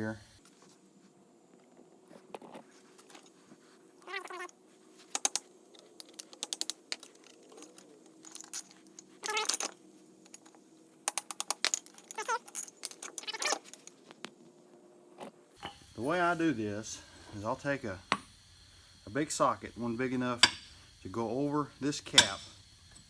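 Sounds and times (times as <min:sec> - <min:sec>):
short squeaks: 0:04.0 - 0:04.6, 0:08.5 - 0:09.8, 0:12.0 - 0:13.8
small tools clicking on metal: 0:05.1 - 0:14.0.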